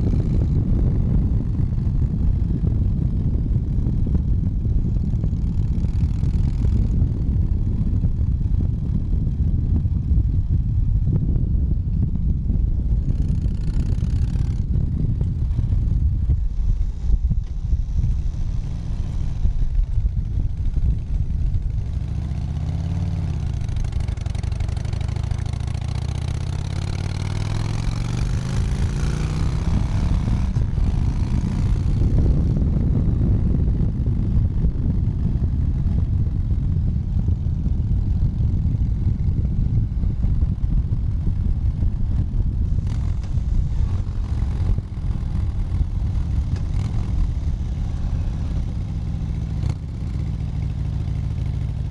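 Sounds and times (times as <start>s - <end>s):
motorcycle engine revving: 0.0s - 51.9s
road and wind noise: 0.0s - 51.9s.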